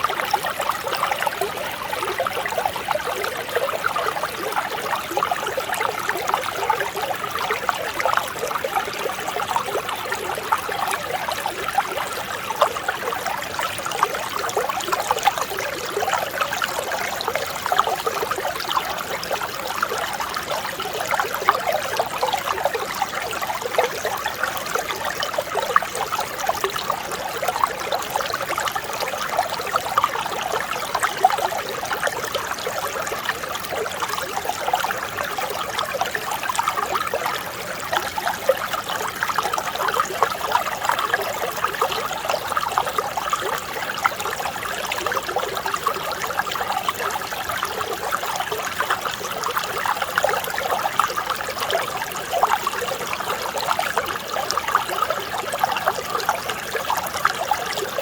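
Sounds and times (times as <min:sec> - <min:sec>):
stream babbling: 0:00.0 - 0:58.0.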